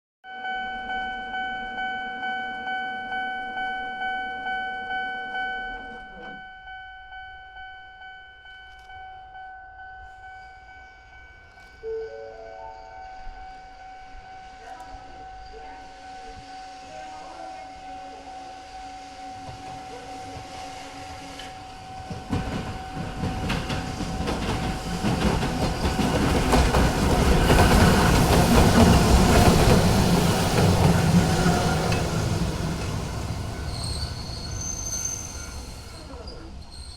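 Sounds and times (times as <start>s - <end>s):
crossing warning signal tone: 0.3s - 36.7s
train running noise: 0.6s - 36.9s
high wheel squeal: 29.1s - 36.9s.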